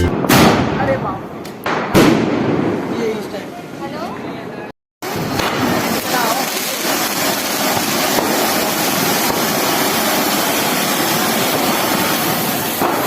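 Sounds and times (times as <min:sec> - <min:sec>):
firework hissing: 0:05.1 - 0:13.0.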